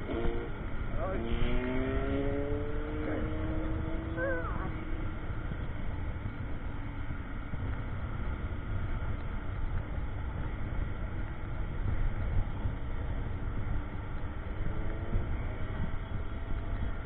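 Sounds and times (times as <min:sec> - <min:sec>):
motorcycle engine hum: 0:00.0 - 0:17.0
motorcycle road noise: 0:00.0 - 0:17.0.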